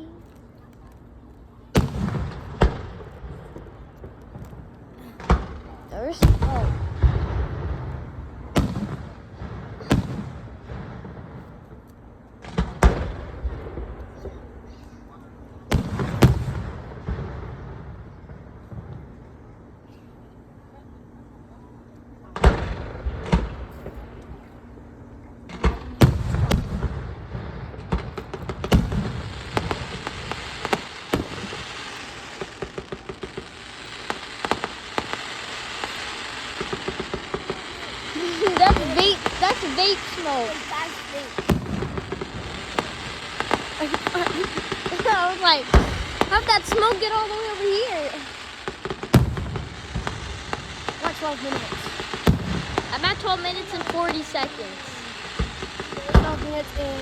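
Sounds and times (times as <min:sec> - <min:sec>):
crackling hiss: 0:00.0 - 0:20.3, 0:21.8 - 0:57.0
fireworks bangs: 0:01.6 - 0:19.5, 0:22.2 - 0:24.9, 0:25.5 - 0:57.0
low rumbling echo: 0:01.8 - 0:11.8, 0:22.4 - 0:57.0.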